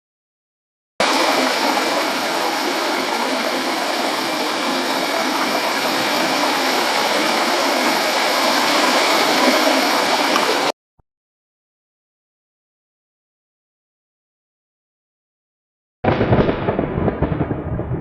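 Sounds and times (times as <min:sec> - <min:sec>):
steady rushing noise: 0:01.0 - 0:10.7.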